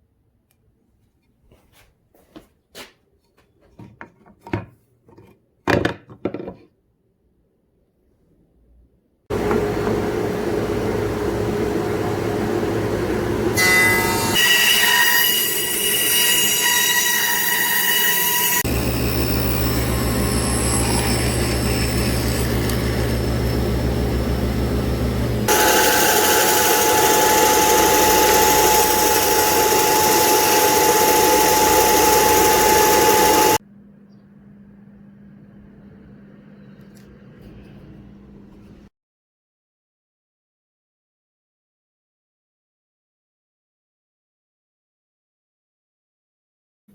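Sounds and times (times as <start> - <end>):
power tools cutting wood: 9.3 - 33.6
low hum: 18.7 - 38.9.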